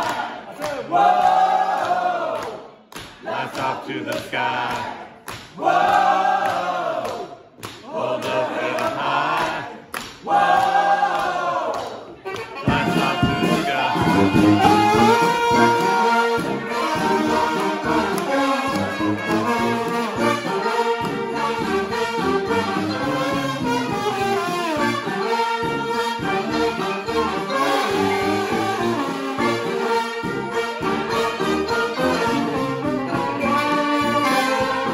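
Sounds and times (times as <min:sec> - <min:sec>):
group of voices chanting: 0:00.0 - 0:18.9
brass band playing: 0:12.1 - 0:34.9.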